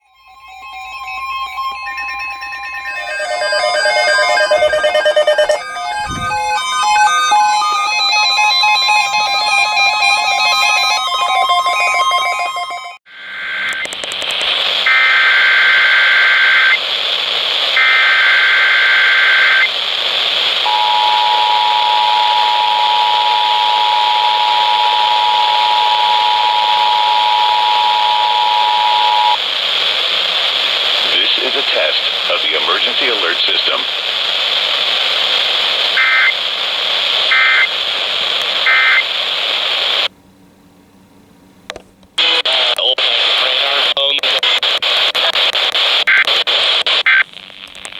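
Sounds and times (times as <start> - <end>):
digital data tone bursts: 0.0 - 13.0
music: 0.0 - 13.0
two-tone attention signal: 0.0 - 13.0.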